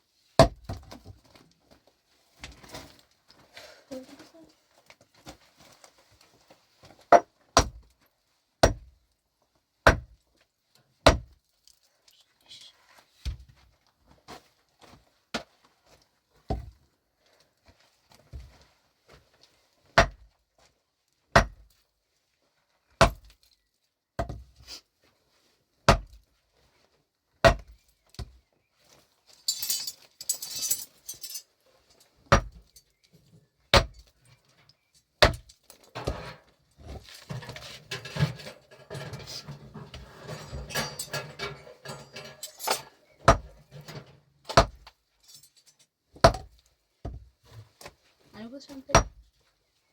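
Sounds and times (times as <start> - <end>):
pickaxe striking rock: 8.6 - 8.9, 21.4 - 21.6, 23.0 - 23.2, 25.9 - 26.2, 27.4 - 27.7, 32.3 - 32.6, 33.7 - 34.0, 35.2 - 36.2, 43.2 - 43.6, 44.5 - 44.8, 46.2 - 46.5
scraping and rattling: 29.4 - 31.5, 35.7 - 44.3
dirt and stones sliding: 35.9 - 44.2.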